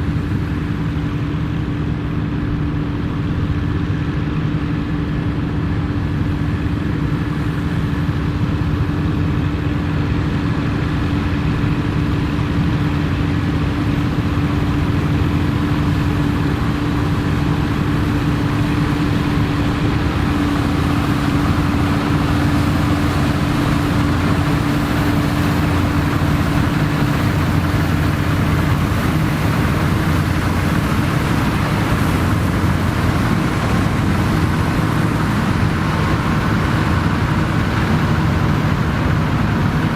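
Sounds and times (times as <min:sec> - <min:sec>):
combine harvester humming: 0:00.0 - 0:39.9
rushing noise: 0:00.0 - 0:39.9.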